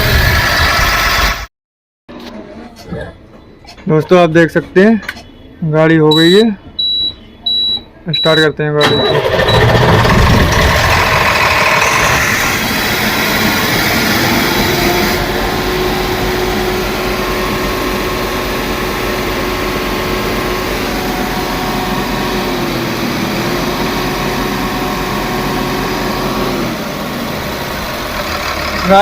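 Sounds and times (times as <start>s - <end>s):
diesel engine idling: 6.1s - 29.0s.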